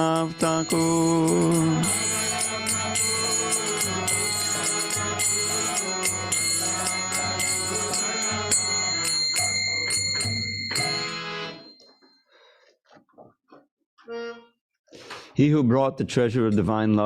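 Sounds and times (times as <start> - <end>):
hand cymbals striking: 0.0 - 11.4
held chord: 0.0 - 11.8.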